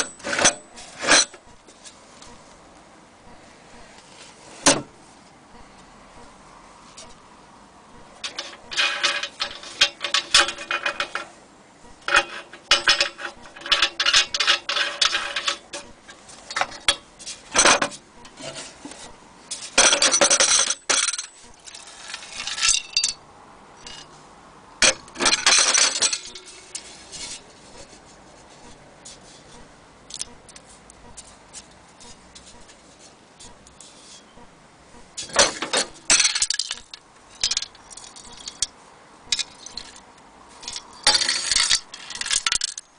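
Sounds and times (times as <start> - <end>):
metal stove parts clanking: 8.2 - 11.3, 12.1 - 18.7, 19.6 - 23.2, 24.8 - 27.4, 35.2 - 38.7.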